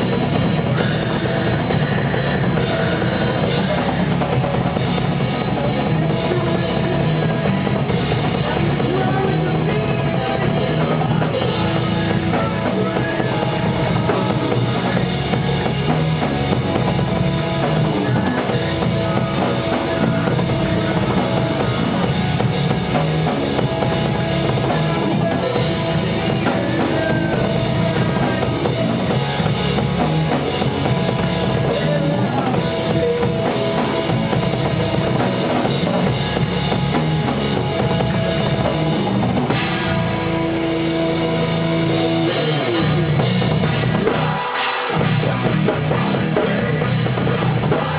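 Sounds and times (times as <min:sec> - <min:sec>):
band playing rock music: 0:00.0 - 0:47.9
drum kit and bass drum: 0:00.0 - 0:47.9.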